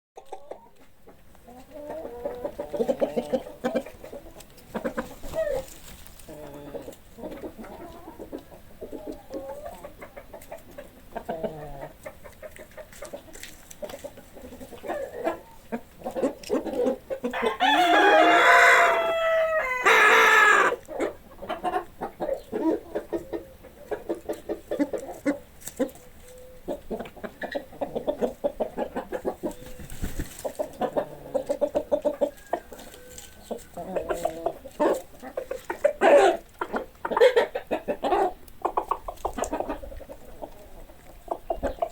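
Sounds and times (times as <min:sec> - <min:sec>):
chickens clucking: 0:00.2 - 0:41.9
rooster crowing: 0:17.4 - 0:20.7, 0:32.3 - 0:33.8.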